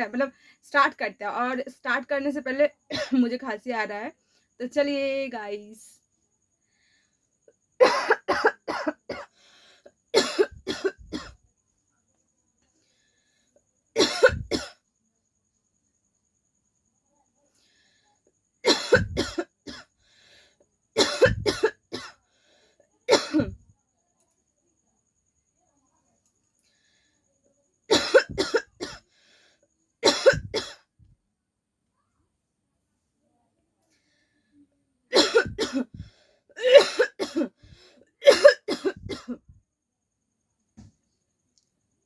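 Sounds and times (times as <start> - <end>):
woman coughing: 2.9 - 3.3, 7.8 - 9.3, 10.2 - 11.4, 14.0 - 14.8, 18.6 - 19.9, 21.0 - 22.2, 23.1 - 23.6, 27.9 - 29.0, 30.0 - 30.8, 35.1 - 37.6, 38.2 - 39.5.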